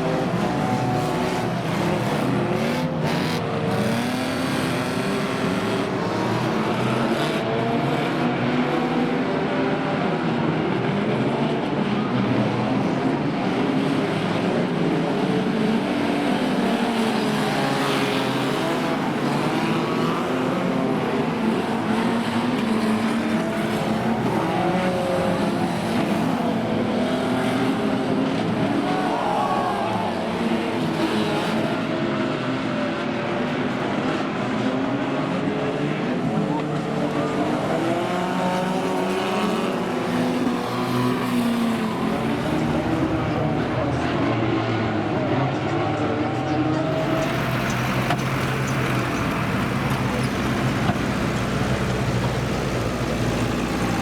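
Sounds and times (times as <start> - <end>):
racing car engines revving: 0.0 - 54.0.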